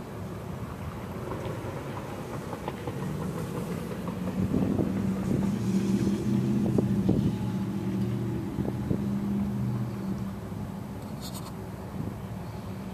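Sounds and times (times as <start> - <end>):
vehicle engine humming: 0.0 - 12.9.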